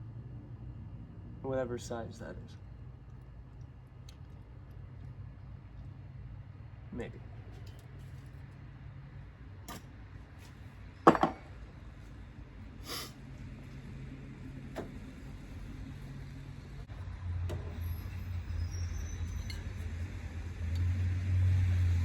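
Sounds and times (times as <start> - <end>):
hand tools clinking and tapping: 11.1 - 11.5.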